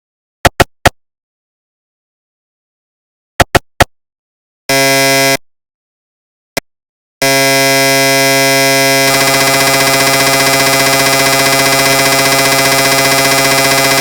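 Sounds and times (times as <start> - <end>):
mri scanner steady buzz: 7.2 - 14.0.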